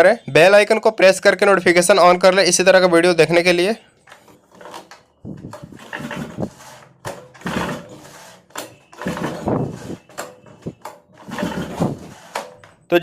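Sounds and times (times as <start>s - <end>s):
pull-starter rope rattling: 4.1s - 12.8s.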